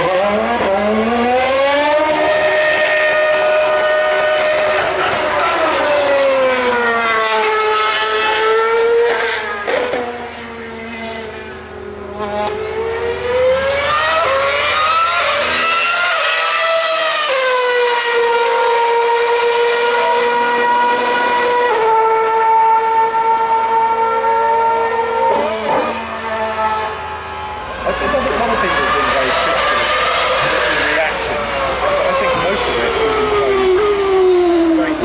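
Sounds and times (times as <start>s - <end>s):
racing car engines at high revs: 0.0s - 35.0s.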